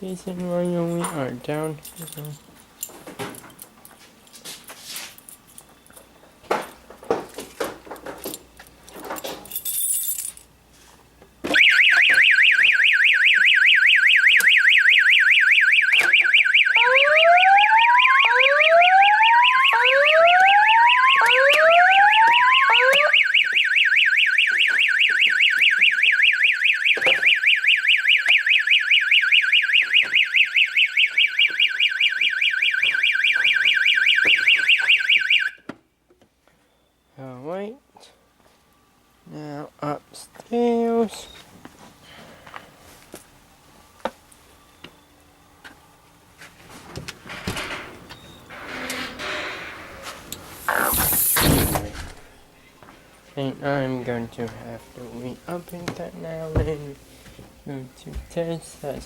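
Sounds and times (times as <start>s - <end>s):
fast warbling alarm tone: 11.5s - 35.6s, 50.6s - 51.8s
rising whoop alarm: 16.7s - 23.6s.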